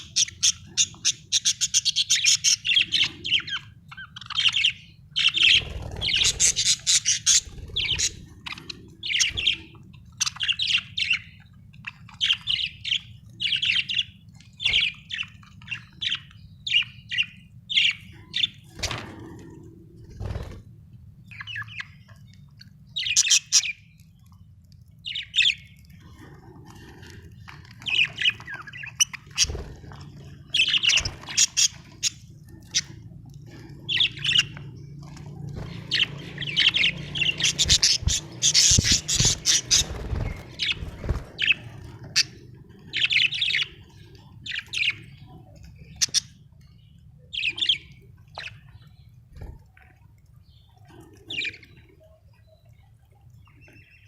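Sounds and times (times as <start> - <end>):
steady low hum: 0.0 - 50.4
budgerigars chirping and squawking: 0.0 - 54.0.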